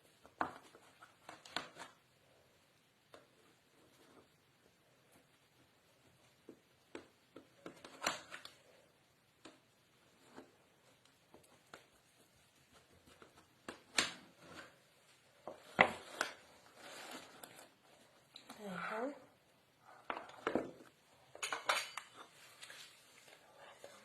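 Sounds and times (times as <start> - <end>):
dishes clinking: 21.4 - 22.3.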